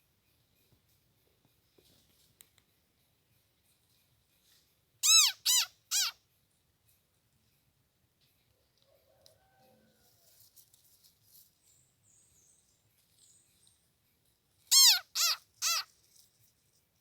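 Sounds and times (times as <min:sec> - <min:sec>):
loud animal calls: 0:14.7 - 0:15.9.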